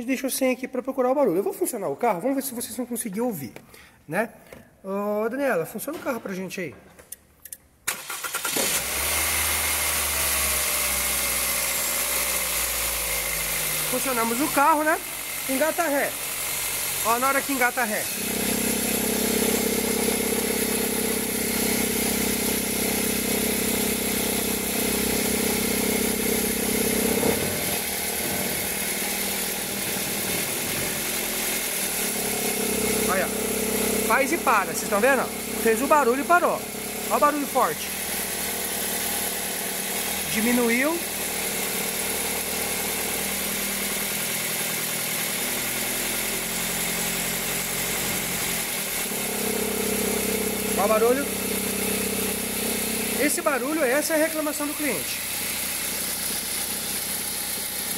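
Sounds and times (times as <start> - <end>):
car engine idling: 7.9 - 42.5, 47.4 - 57.9
steady engine drone: 12.6 - 39.4.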